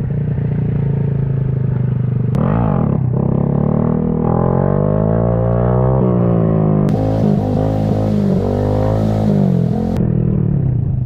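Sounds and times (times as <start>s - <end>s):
motorcycle engine revving: 2.3s - 10.8s.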